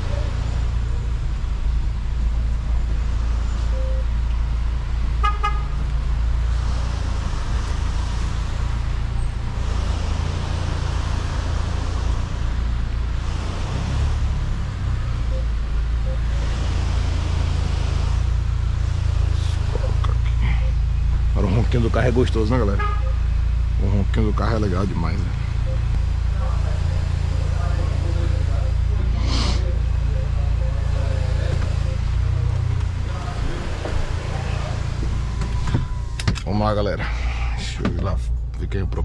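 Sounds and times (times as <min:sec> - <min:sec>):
car engine droning at low speed: 0:00.0 - 0:39.0
short car horn toot: 0:22.8 - 0:23.3.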